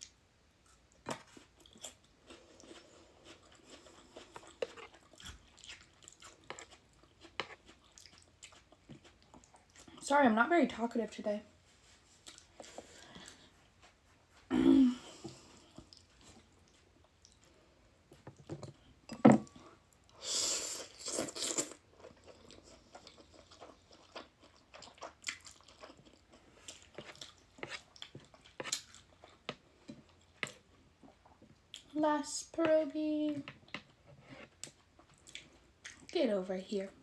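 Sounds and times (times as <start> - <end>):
chewing noodles: 0.7 - 10.0, 12.1 - 13.6, 15.6 - 18.7, 19.9 - 31.9, 33.5 - 36.1.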